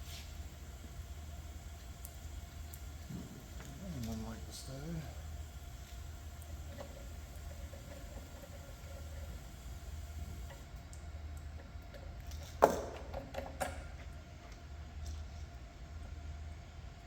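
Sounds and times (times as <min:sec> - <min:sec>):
steady low hum: 0:00.0 - 0:12.4.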